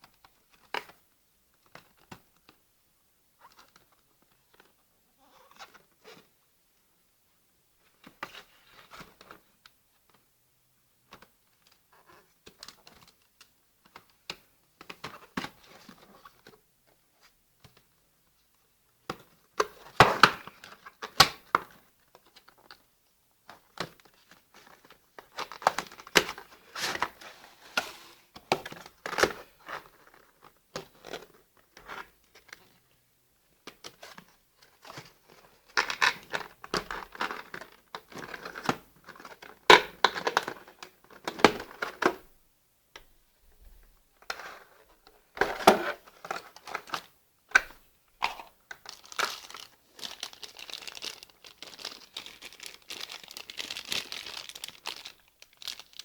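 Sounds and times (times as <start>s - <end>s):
packaging crinkling and rustling: 44.2s - 56.0s.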